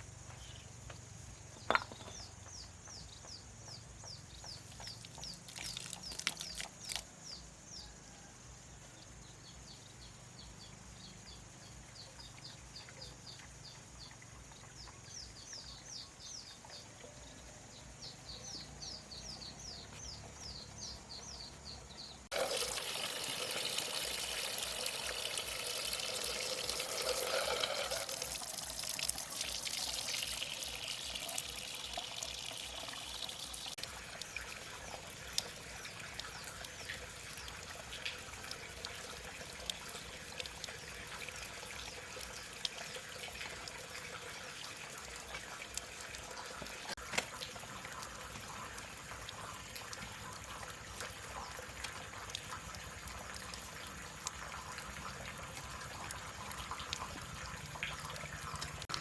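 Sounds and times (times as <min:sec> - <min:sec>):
water pouring from bamboo pipe: 0:04.7 - 0:07.1, 0:22.3 - 0:59.0.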